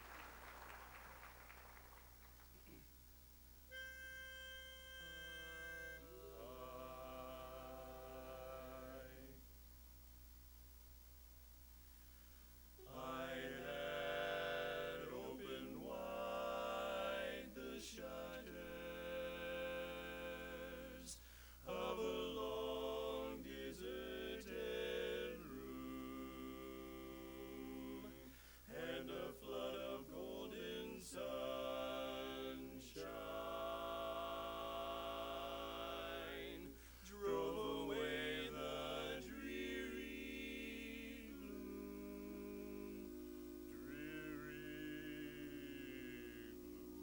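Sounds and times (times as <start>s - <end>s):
men singing in close harmony: 6.0s - 9.4s, 12.8s - 47.0s.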